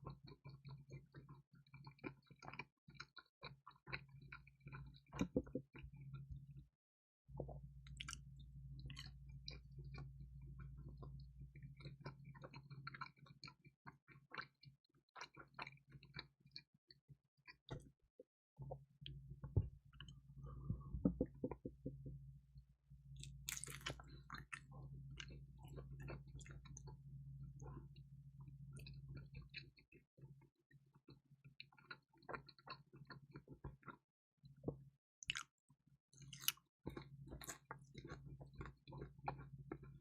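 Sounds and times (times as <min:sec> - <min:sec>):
chewing crispy pizza: 0:00.0 - 0:06.4, 0:07.9 - 0:16.7, 0:23.2 - 0:35.5, 0:36.2 - 0:40.0
low hum: 0:18.7 - 0:29.6.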